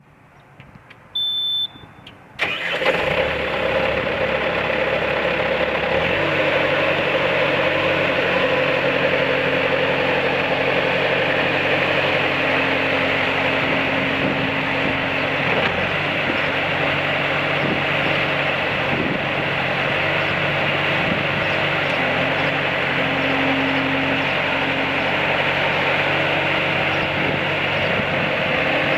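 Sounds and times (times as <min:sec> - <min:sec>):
high warning beep: 0:01.2 - 0:02.2
diesel engine starting and idling: 0:01.2 - 0:28.9.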